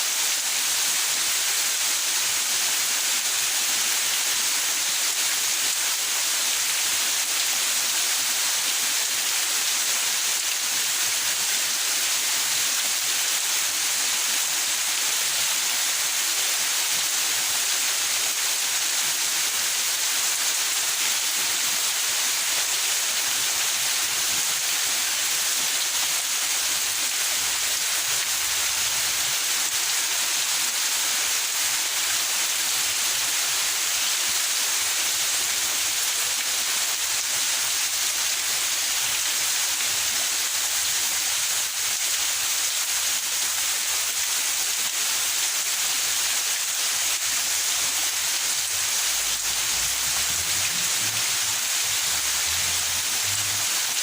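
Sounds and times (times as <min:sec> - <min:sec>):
steady rain hiss: 0:00.0 - 0:54.0.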